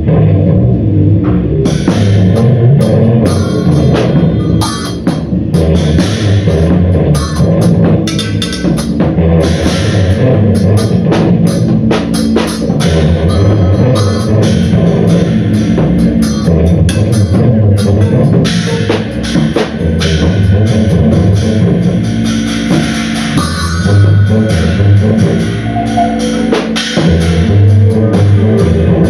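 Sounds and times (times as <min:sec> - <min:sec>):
drum kit and cymbals: 0:01.3 - 0:29.0
live band playing loudly: 0:03.2 - 0:10.1, 0:21.0 - 0:28.9.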